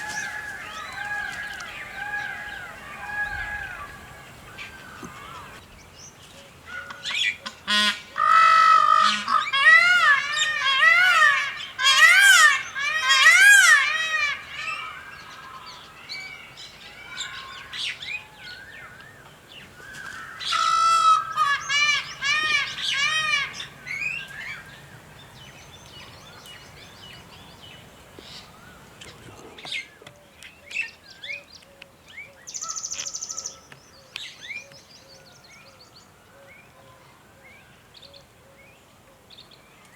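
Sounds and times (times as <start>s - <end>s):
birds calling rapidly: 0.0s - 6.1s, 6.8s - 31.7s.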